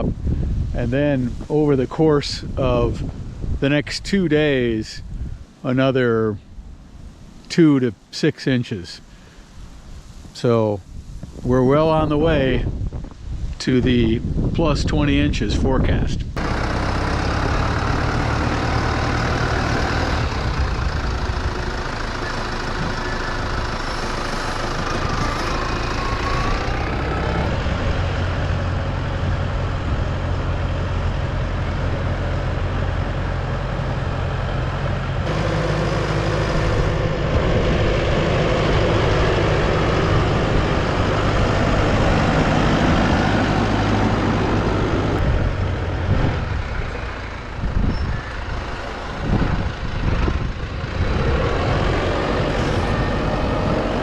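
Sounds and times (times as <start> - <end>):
engine running steadily: 16.2 - 54.0
constant rushing noise: 19.2 - 54.0.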